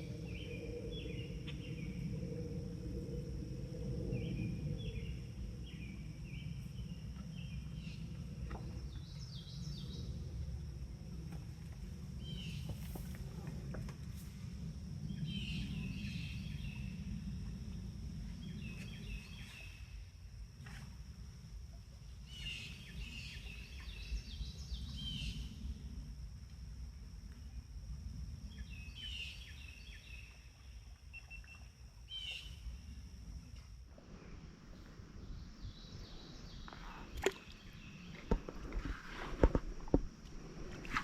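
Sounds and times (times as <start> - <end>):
low rumble: 0.0 - 19.4, 33.0 - 41.0.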